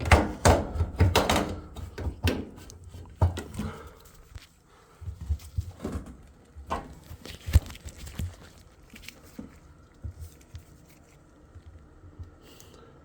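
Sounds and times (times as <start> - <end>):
rubber gasket knocking and rubbing: 0.0 - 3.9.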